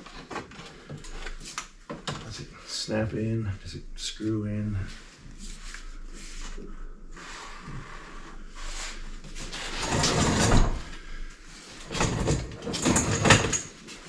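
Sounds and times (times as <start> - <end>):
car parts scraping and rattling: 9.3 - 11.0, 11.6 - 14.0.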